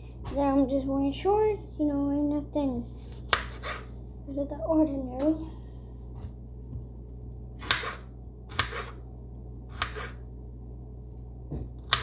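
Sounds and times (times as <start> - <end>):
knife cutting peppers on board: 3.1 - 3.9, 7.6 - 9.0, 9.7 - 10.2, 11.7 - 12.0.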